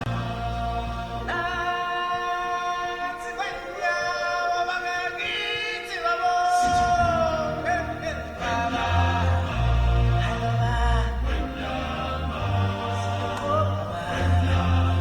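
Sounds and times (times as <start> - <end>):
singers holding chant-like notes: 0.0 - 15.0
low musical accompaniment: 6.4 - 15.0.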